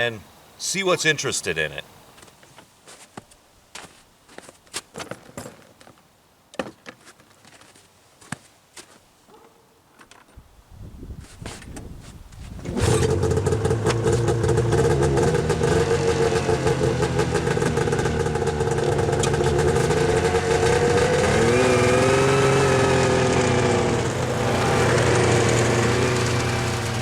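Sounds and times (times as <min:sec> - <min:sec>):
vehicle engine starting and revving: 0:12.6 - 0:27.0.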